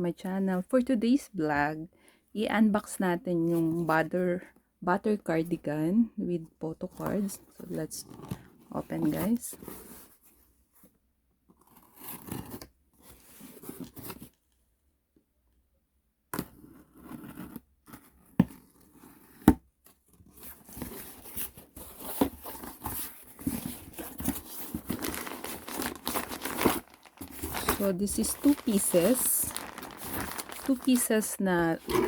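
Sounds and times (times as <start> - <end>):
packaging tearing and crinkling: 23.6 - 32.0.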